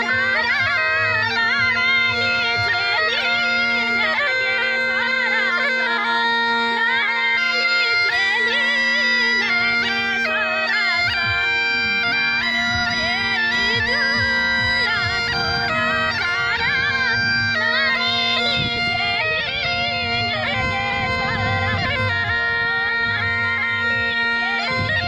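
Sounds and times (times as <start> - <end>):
bagpipe melody over drone: 0.0 - 25.0
low drum beats: 9.6 - 25.0.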